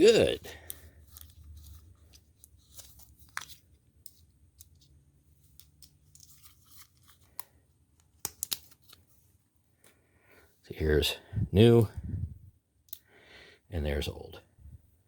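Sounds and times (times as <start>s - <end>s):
bearing pack clicks and tearing: 8.1s - 9.0s.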